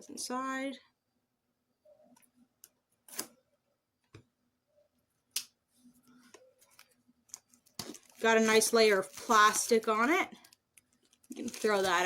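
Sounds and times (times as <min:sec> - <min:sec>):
plastic film crinkling: 0:06.6 - 0:12.0.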